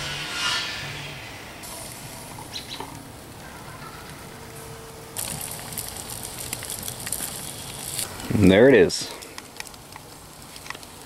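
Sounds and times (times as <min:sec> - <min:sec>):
meat sizzling on a charcoal grill: 0:01.6 - 0:02.8, 0:05.1 - 0:11.0.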